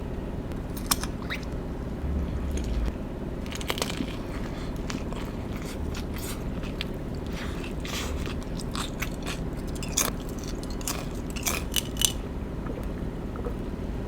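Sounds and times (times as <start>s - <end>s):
sausage being chewed: 0.7s - 13.5s
mouth smacks: 0.8s - 2.9s.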